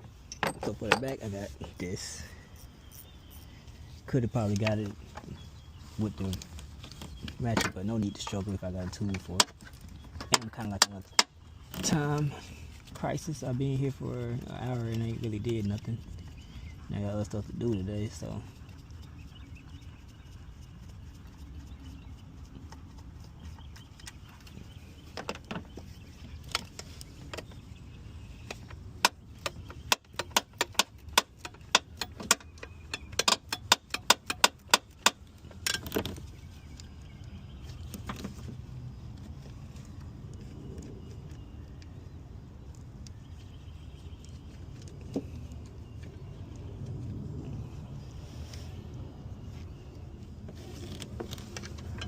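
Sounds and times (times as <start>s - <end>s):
metallic clicks of hand tools: 29.0s - 36.1s
low steady rumble: 30.9s - 52.0s.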